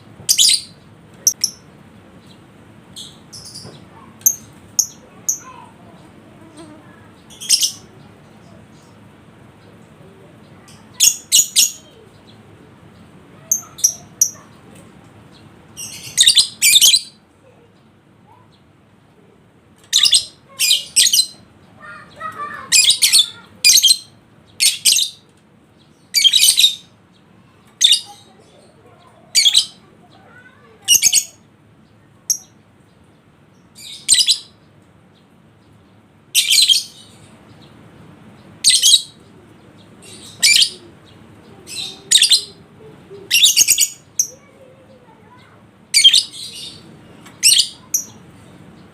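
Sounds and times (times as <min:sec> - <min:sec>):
bird chattering calls: 0:00.3 - 0:01.8, 0:02.9 - 0:09.0, 0:13.4 - 0:14.7, 0:38.6 - 0:48.8.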